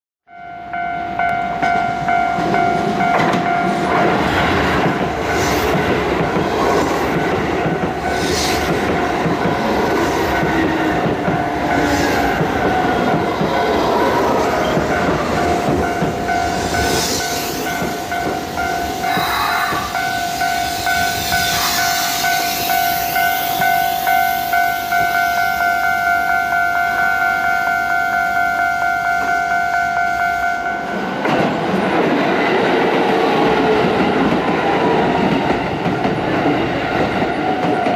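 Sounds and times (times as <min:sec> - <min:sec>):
level crossing warning alarm: 0:00.3 - 0:06.4, 0:07.0 - 0:31.4
train wheels clattering over rails: 0:02.4 - 0:21.4, 0:31.1 - 0:37.9.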